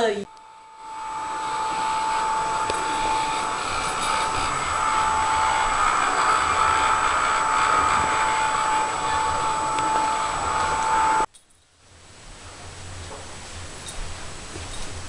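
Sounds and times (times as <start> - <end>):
whirring motor with high whine: 0.2 - 11.3.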